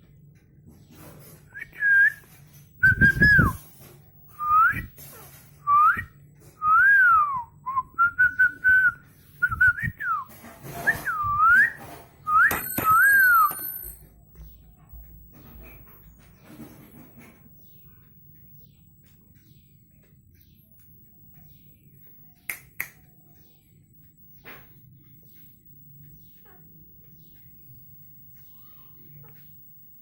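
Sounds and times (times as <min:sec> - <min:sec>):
whistled notes: 0:01.5 - 0:03.6, 0:10.8 - 0:13.7
sharp clicks: 0:18.1 - 0:29.6.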